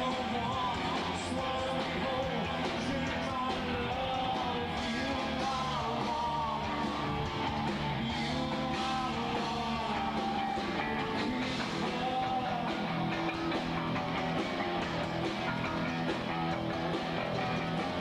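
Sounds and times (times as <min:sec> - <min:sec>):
rock band playing live: 0:00.0 - 0:18.0.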